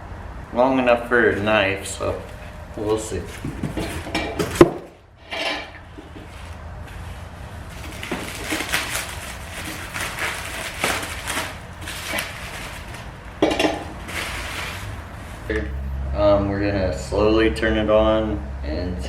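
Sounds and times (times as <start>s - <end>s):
scraping and rustling: 2.0s - 15.8s
metal knocks and clinks: 3.2s - 5.8s, 13.4s - 14.0s.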